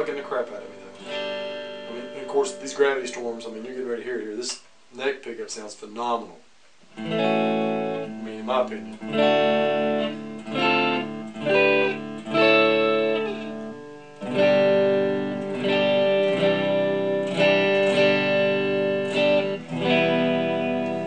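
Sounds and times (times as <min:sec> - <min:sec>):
electric guitar chords: 0:00.0 - 0:03.8, 0:06.9 - 0:21.0.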